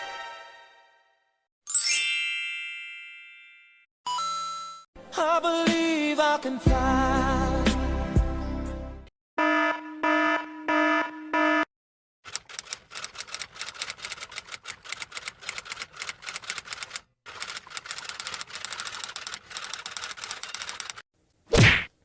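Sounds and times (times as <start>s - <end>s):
electronic alarm beeping: 9.4s - 11.7s
typewriter keys typing: 12.3s - 21.0s.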